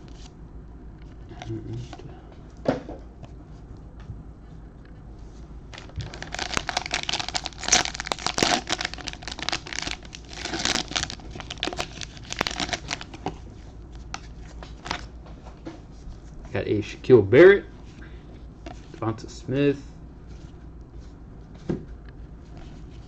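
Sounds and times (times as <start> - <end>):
plastic wrapper crinkling: 5.7 - 15.1.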